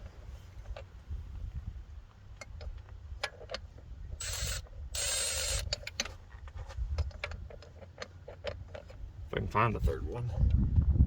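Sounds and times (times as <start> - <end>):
ratchet wrench ratcheting: 4.2 - 6.0.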